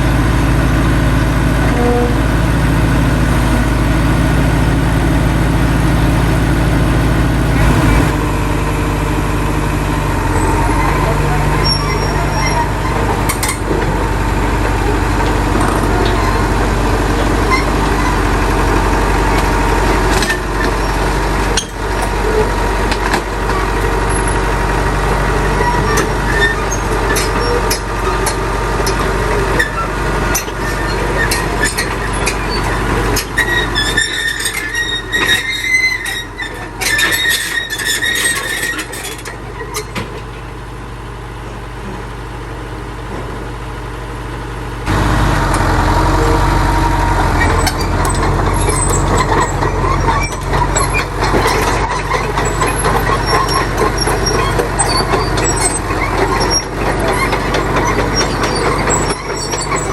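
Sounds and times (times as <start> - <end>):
diesel machinery engine drone: 0.0 - 59.9
metallic squeals and clanks: 1.1 - 4.3, 10.3 - 24.6, 25.4 - 40.3, 45.6 - 59.9.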